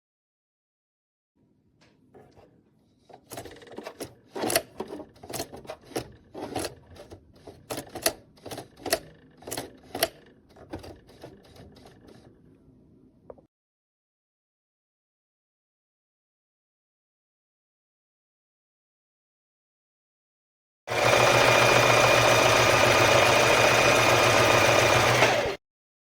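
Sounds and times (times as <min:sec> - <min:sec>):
sewing machine clacking: 0:03.2 - 0:12.2, 0:20.9 - 0:25.6.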